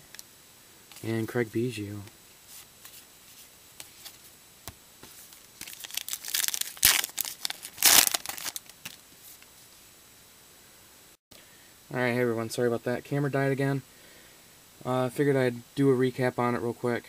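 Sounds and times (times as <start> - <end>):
foil wrapper crinkling and tearing: 5.5 - 9.0.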